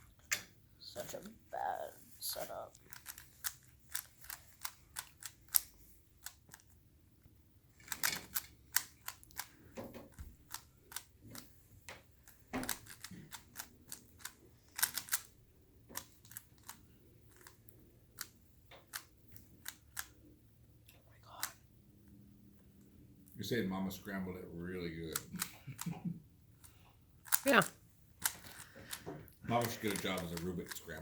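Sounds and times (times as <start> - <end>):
puzzle cube plastic clicks: 2.4 - 20.3, 25.0 - 25.9, 26.6 - 31.0.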